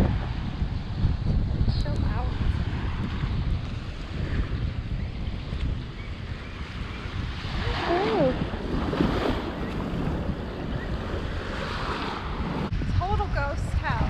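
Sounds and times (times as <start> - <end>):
wind buffeting microphone: 0.0 - 14.0
surf washing in: 6.6 - 14.0.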